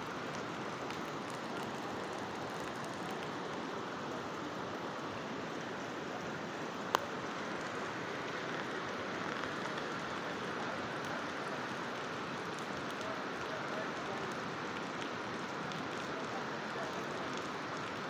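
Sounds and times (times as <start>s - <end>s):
river water rushing: 0.0s - 13.4s.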